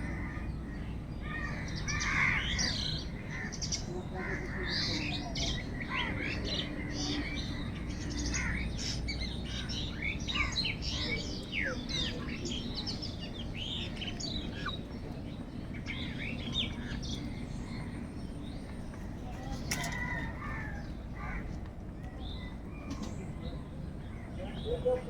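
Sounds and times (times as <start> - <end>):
birds chirping: 0.0 - 25.0
crow cawing: 1.2 - 3.6, 8.2 - 8.7, 19.8 - 21.6.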